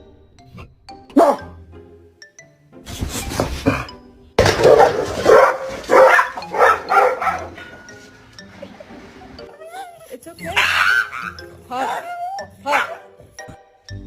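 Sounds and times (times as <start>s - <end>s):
background music: 0.0s - 14.0s
dog barking: 1.2s - 1.5s, 4.4s - 7.8s, 10.5s - 13.2s.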